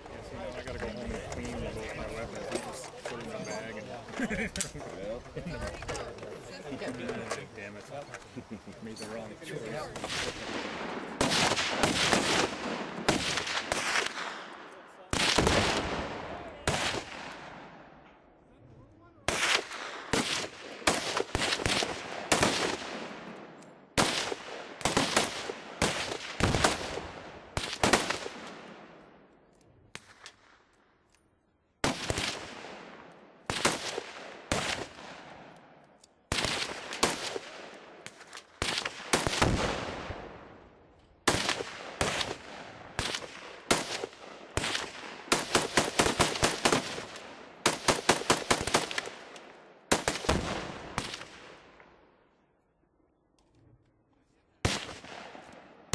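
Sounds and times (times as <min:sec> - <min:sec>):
gunshots with echo: 0:10.0 - 0:17.8.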